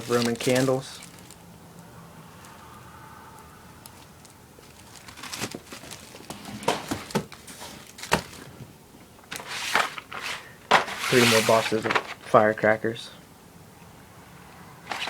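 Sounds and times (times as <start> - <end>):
plastic wrapping crinkling: 0.0 - 1.5, 3.8 - 8.6, 9.3 - 12.4.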